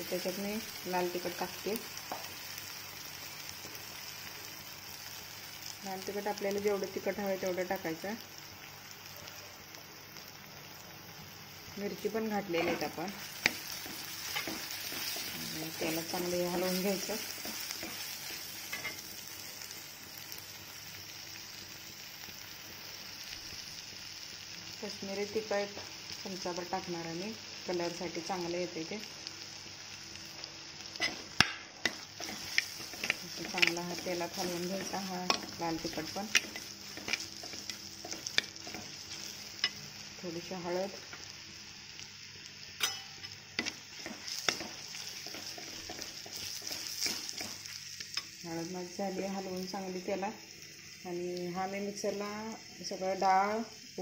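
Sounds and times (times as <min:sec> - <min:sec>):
oil sizzling in a pan: 0:00.0 - 0:54.0
spoon scraping a pan: 0:12.5 - 0:19.1, 0:30.9 - 0:39.8, 0:42.8 - 0:48.4.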